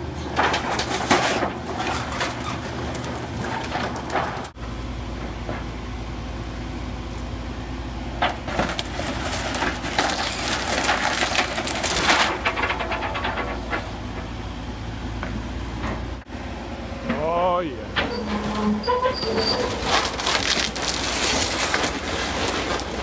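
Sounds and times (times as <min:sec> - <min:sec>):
wood cracking and splintering: 0:00.4 - 0:04.6, 0:08.2 - 0:14.4, 0:19.4 - 0:23.0.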